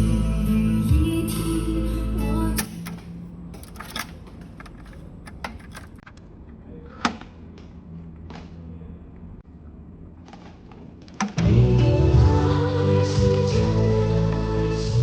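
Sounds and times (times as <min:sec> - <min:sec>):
music playback: 0:00.0 - 0:02.9, 0:11.4 - 0:15.0.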